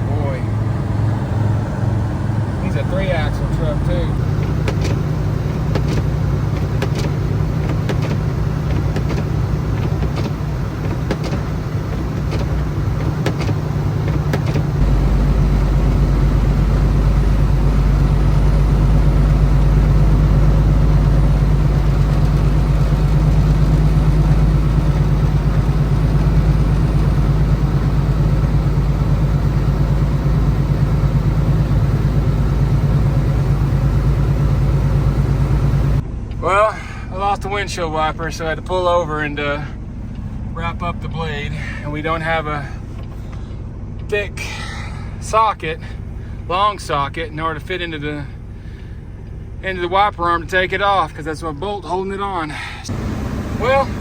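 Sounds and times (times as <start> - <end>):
truck engine and road noise: 0.0 - 54.0
sharp clicks: 4.2 - 14.8.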